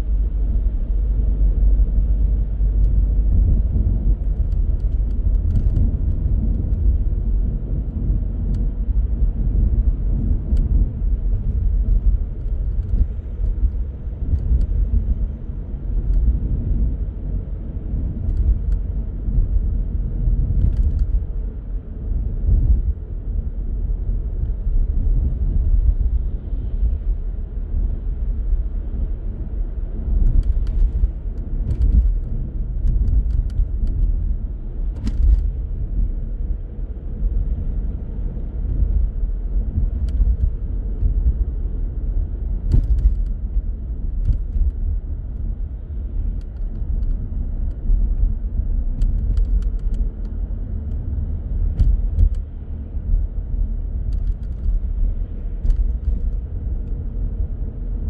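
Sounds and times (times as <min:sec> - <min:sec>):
car road and engine rumble: 0:00.0 - 0:58.0
light clicks and ticks: 0:04.2 - 0:07.0, 0:18.2 - 0:18.9, 0:30.2 - 0:34.2, 0:39.8 - 0:41.1, 0:46.3 - 0:47.9, 0:49.0 - 0:52.5, 0:54.1 - 0:55.0, 0:55.6 - 0:57.0.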